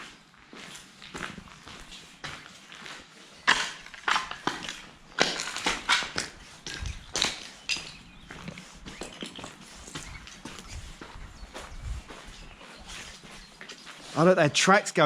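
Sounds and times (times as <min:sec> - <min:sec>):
footsteps crunching on rubble: 0:00.0 - 0:14.4.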